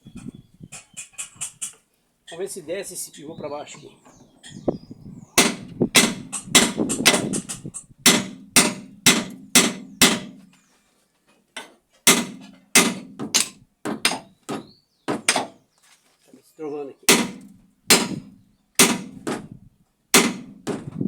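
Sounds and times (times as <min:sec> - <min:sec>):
hammer striking metal: 0:05.4 - 0:10.4, 0:12.1 - 0:14.3, 0:17.1 - 0:18.2, 0:18.8 - 0:19.4, 0:20.2 - 0:20.8.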